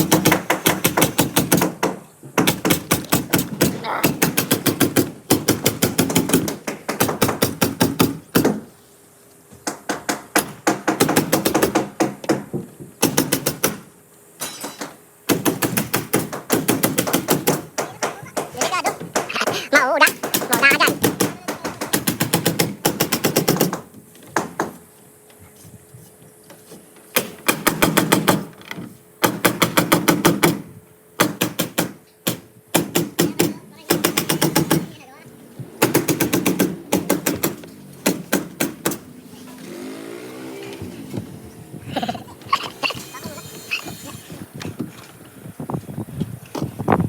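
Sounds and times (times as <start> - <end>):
nail gun firing: 0.0 - 8.7, 9.6 - 19.4, 20.1 - 24.7, 27.2 - 28.6, 29.2 - 34.9, 35.8 - 40.0.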